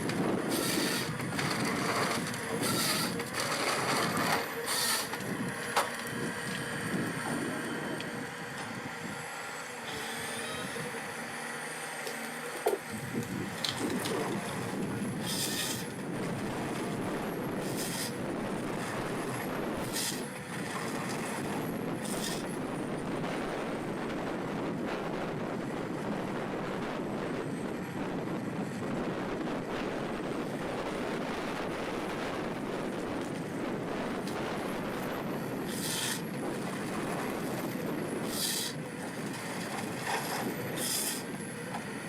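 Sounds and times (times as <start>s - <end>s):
heavy machine running: 0.0s - 24.6s.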